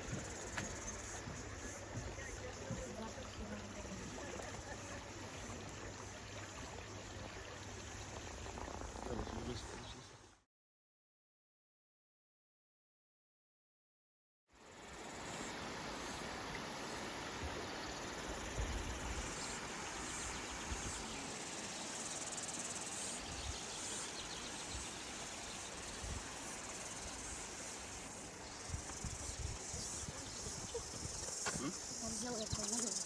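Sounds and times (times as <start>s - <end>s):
insects buzzing: 0.0s - 10.4s, 14.6s - 33.0s.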